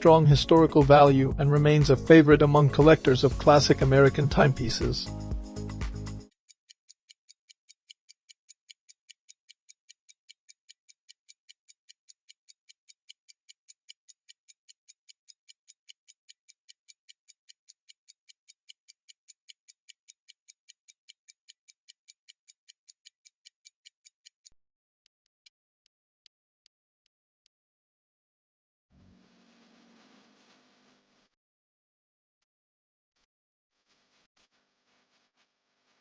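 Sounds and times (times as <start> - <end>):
pocket watch ticking: 6.2 - 24.6.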